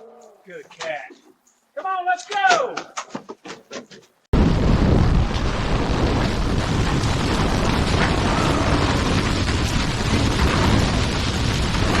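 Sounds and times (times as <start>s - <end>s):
tornado wind roar: 4.4s - 12.0s.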